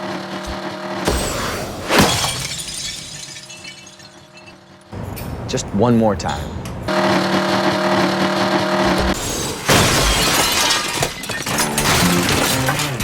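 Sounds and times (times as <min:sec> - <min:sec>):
loud crash with shattering: 0:01.0 - 0:04.6, 0:09.1 - 0:13.0
music: 0:11.5 - 0:13.0.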